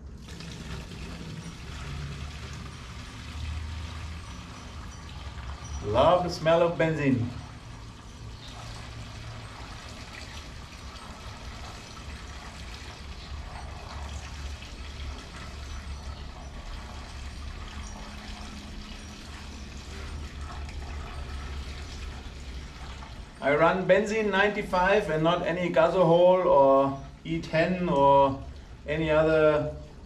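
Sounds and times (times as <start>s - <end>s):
gasoline pouring and trickling: 0.0s - 30.0s.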